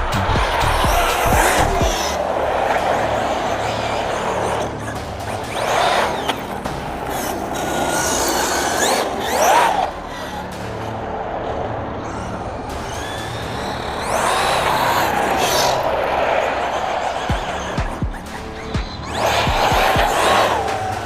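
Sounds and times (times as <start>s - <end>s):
electric motor whining: 0.0s - 21.0s
steady noisy rush: 0.0s - 21.0s.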